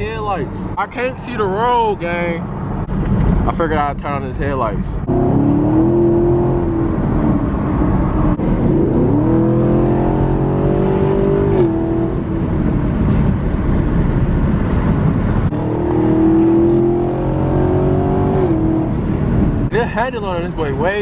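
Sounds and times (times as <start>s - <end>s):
car engine accelerating: 5.0s - 19.7s.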